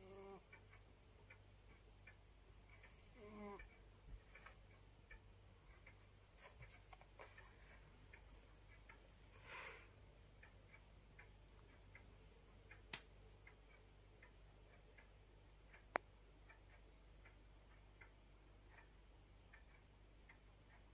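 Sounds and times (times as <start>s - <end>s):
faint soft ticks: 0.0s - 20.9s
sharp clicks: 12.7s - 13.8s.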